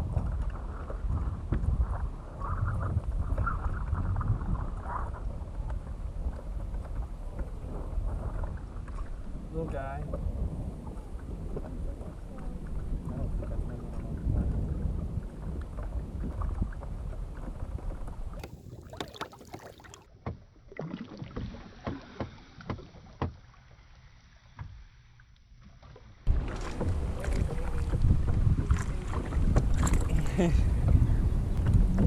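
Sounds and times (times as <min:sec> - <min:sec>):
wind buffeting microphone: 0:00.0 - 0:19.8, 0:26.3 - 0:32.0.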